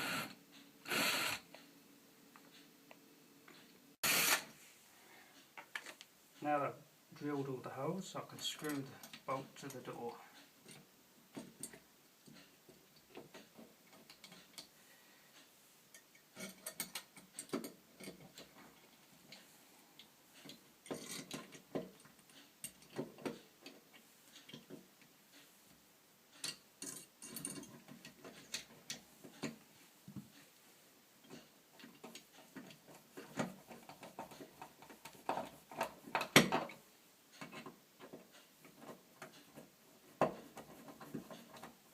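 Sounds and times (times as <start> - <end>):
screwdriver driving screws clicking: 4.0 - 4.5.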